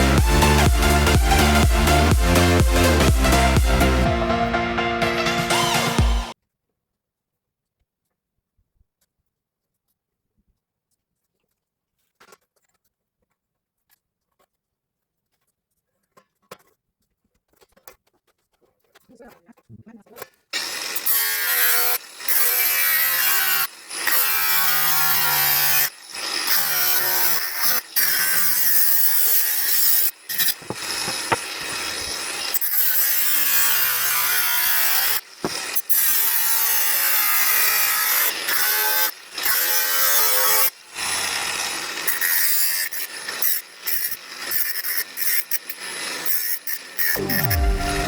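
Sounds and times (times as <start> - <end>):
power tool on sheet metal: 20.6 - 48.0.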